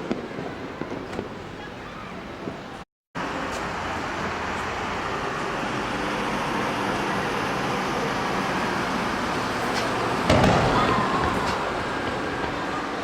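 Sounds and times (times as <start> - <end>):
outdoor background hiss: 0.0 - 13.0
firework shell bursting boom: 10.3 - 12.2.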